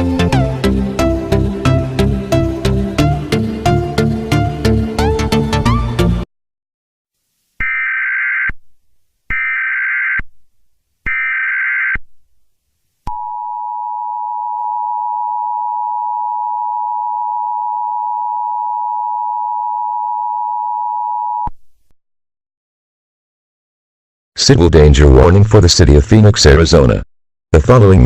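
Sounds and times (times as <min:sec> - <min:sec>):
squawking data tones: 0:07.6 - 0:08.6, 0:09.3 - 0:10.2, 0:11.1 - 0:12.0.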